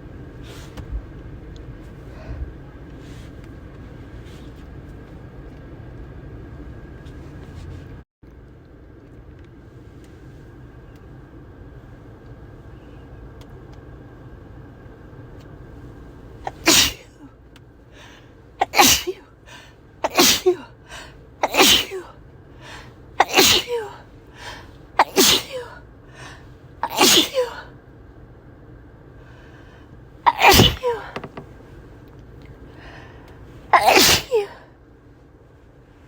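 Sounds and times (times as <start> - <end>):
person sneezing loudly: 16.5 - 17.2, 18.6 - 19.2, 20.0 - 20.7, 21.4 - 22.1, 23.2 - 24.0, 25.0 - 25.8, 26.8 - 27.7, 30.3 - 31.4, 33.7 - 34.7
car cabin rumble: 30.2 - 32.2.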